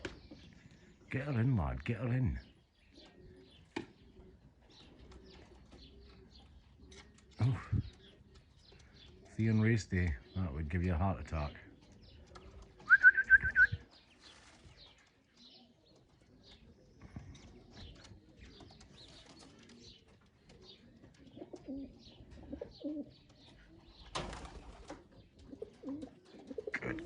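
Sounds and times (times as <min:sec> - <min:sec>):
pigeons cooing softly: 0:00.0 - 0:27.0
rustling: 0:14.1 - 0:15.2.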